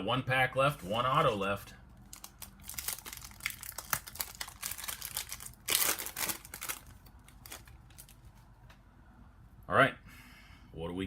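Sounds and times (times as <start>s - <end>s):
foil wrapper crinkling: 2.0s - 8.5s.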